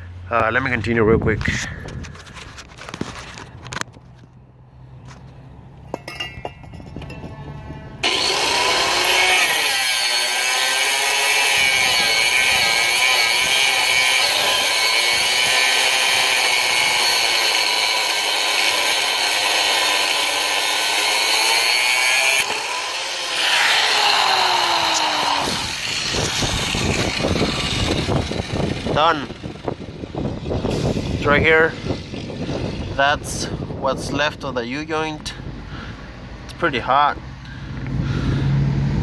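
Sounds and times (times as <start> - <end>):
angle grinder cutting metal: 8.0 - 33.0.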